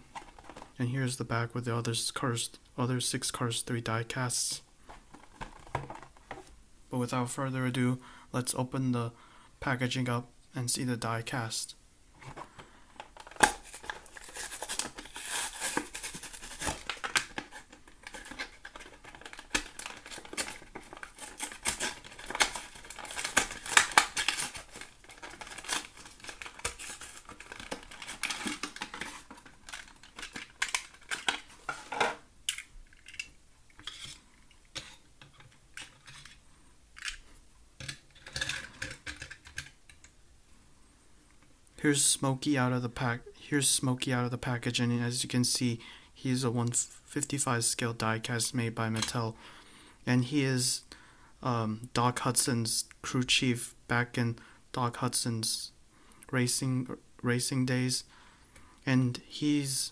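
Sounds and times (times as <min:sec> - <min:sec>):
rustling: 0:12.1 - 0:36.4
plastic packaging crinkling: 0:12.3 - 0:34.2
packaging tearing: 0:13.2 - 0:32.0.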